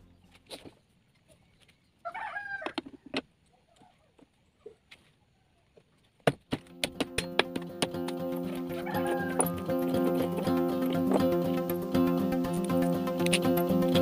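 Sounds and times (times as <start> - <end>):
chicken calling: 2.0 - 4.1, 8.2 - 12.8
sharp clicks and knocks: 6.2 - 8.7, 12.6 - 13.6.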